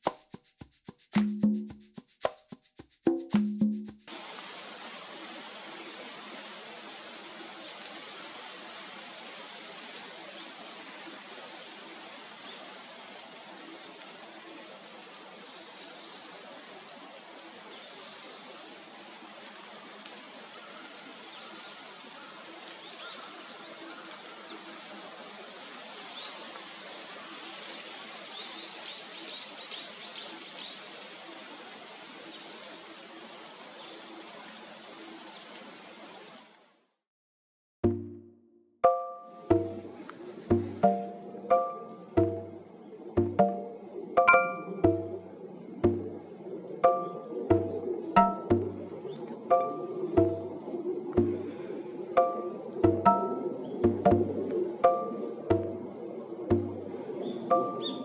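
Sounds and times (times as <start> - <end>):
background hiss: 0.0 - 11.1, 39.3 - 58.0.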